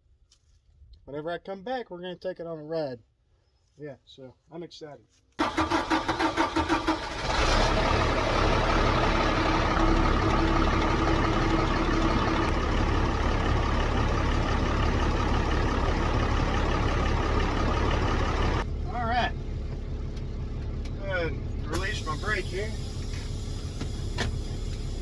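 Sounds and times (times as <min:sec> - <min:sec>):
diesel engine cranking and idling: 0:05.4 - 0:25.0.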